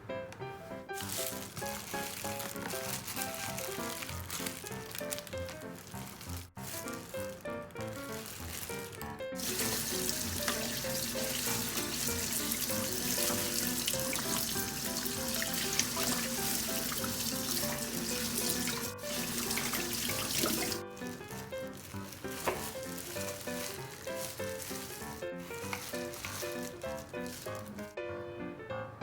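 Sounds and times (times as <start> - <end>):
background music: 0.0 - 29.0
tap water running into sink: 9.4 - 27.8.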